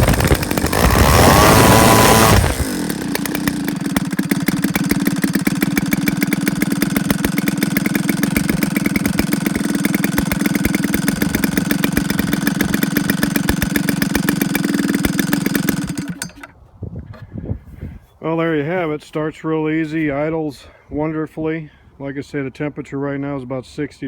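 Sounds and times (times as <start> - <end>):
model aircraft engine idling: 0.0 - 16.6.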